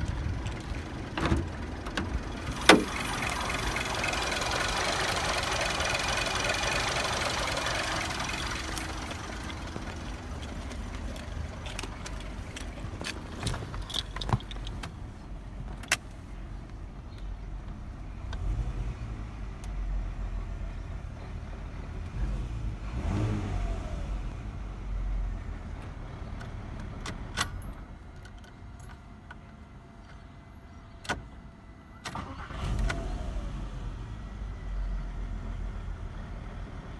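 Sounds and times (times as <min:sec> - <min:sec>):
car engine starting with difficulty: 0:00.0 - 0:15.1, 0:32.0 - 0:36.6.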